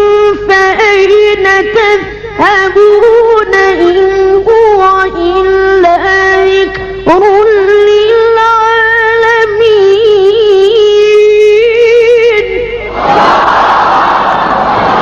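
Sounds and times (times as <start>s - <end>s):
crowd acclaim: 12.9s - 15.0s.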